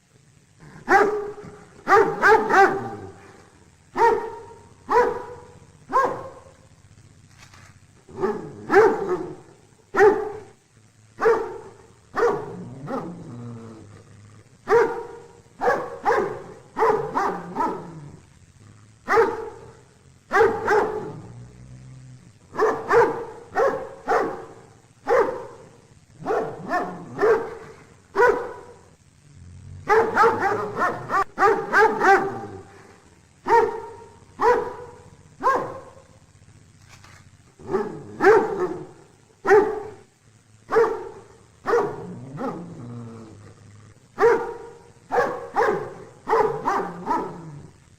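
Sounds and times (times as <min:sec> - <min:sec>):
dog barking: 0:00.6 - 0:06.6, 0:08.1 - 0:10.6, 0:11.2 - 0:13.2, 0:14.6 - 0:18.2, 0:19.0 - 0:21.3, 0:22.5 - 0:28.9, 0:29.8 - 0:32.8, 0:33.4 - 0:36.1, 0:37.6 - 0:40.1, 0:40.7 - 0:42.7, 0:44.2 - 0:47.8.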